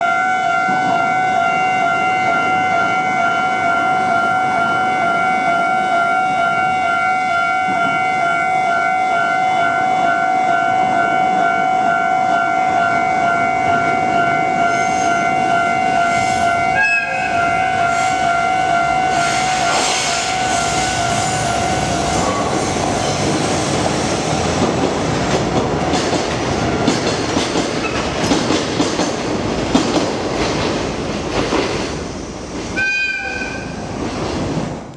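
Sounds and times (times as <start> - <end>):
locomotive horn note: 0.0 - 22.7, 32.8 - 33.8
freight train passing: 0.0 - 34.9.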